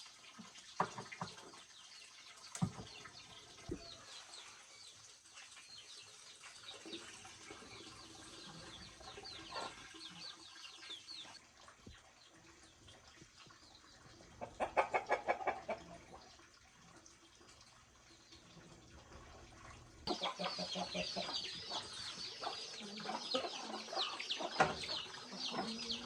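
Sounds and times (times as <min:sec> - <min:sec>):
chicks peeping: 0:07.7 - 0:11.4, 0:20.1 - 0:26.0
chicken clucking: 0:08.4 - 0:10.5, 0:14.4 - 0:16.2, 0:20.1 - 0:26.0.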